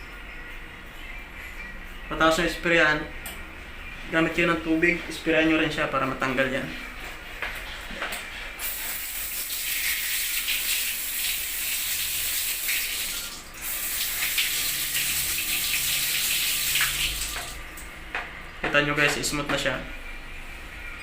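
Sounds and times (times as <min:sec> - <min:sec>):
water jet spraying: 0:08.6 - 0:17.6.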